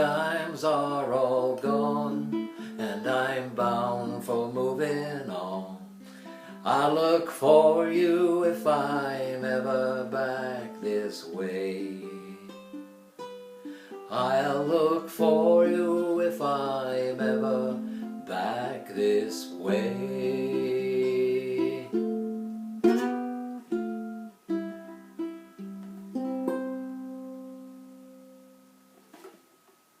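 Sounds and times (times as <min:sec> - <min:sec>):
person singing: 0:00.0 - 0:22.5
strummed acoustic string instrument: 0:00.0 - 0:28.4.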